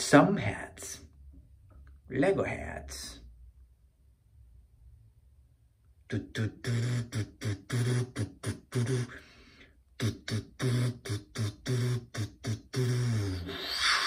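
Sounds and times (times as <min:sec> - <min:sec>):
man making rhythmic vocal syllables: 0:00.0 - 0:01.1, 0:02.0 - 0:03.3, 0:06.0 - 0:14.0.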